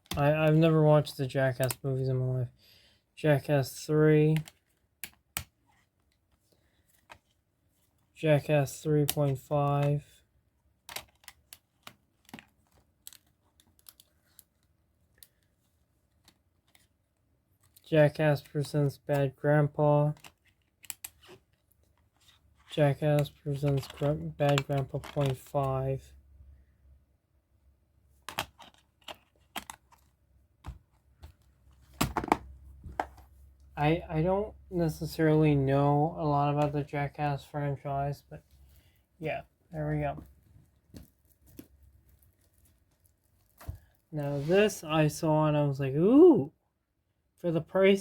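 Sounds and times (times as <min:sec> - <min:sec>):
clicks of dvd cases: 0:28.2 - 0:33.3.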